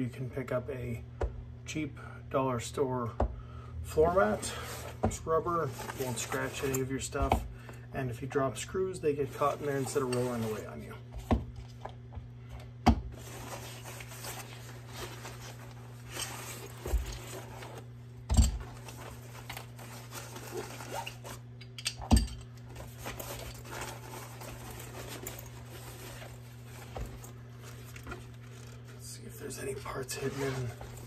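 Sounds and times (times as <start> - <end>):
rustling: 5.6 - 6.9, 13.2 - 18.0, 18.6 - 21.5, 22.7 - 31.0.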